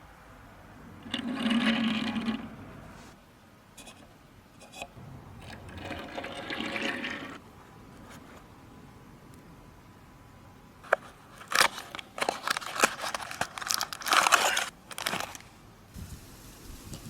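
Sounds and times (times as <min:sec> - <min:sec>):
packaging crackling and crinkling: 0:10.8 - 0:15.6
packaging click: 0:10.9 - 0:15.5.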